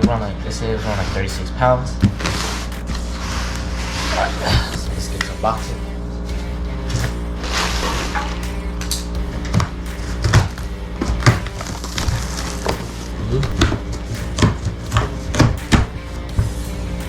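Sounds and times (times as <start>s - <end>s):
background music: 0.0s - 17.0s
cardboard tearing: 2.1s - 5.5s, 9.6s - 16.2s.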